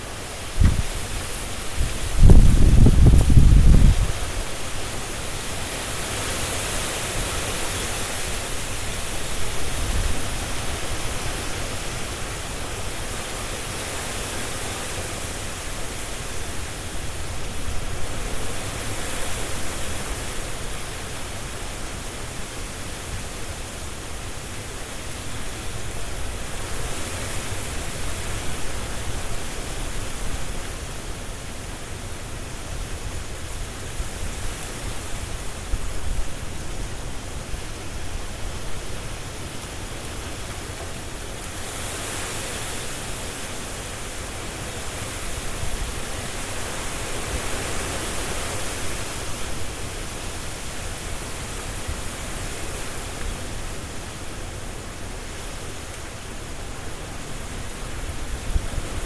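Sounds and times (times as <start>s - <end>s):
wind rustling tree leaves: 0.0s - 59.0s.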